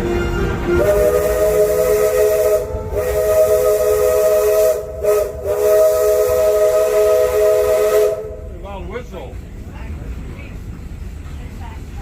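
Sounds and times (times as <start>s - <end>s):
steam locomotive chime whistle: 0.0s - 8.6s.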